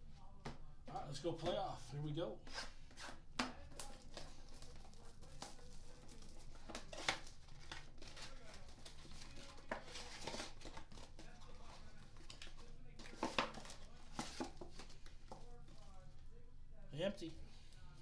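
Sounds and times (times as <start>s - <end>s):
cards rustling: 2.4s - 16.3s
shrink wrap tearing and crinkling: 3.7s - 15.1s.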